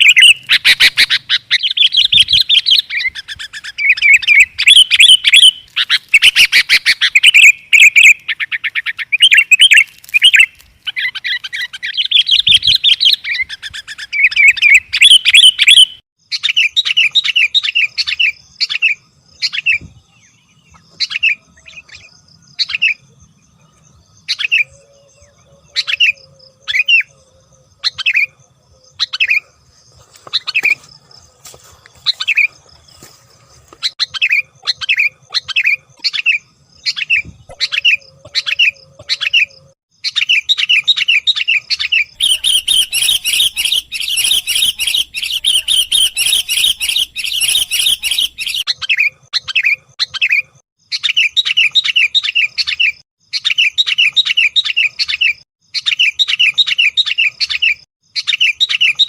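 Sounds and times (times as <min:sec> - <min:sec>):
dense bird chattering: 0:00.0 - 0:19.8, 0:33.8 - 0:59.0
bird chirping: 0:00.0 - 0:59.0.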